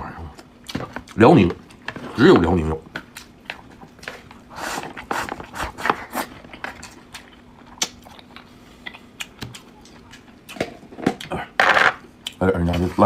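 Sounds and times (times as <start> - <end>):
person chewing: 2.9 - 12.4.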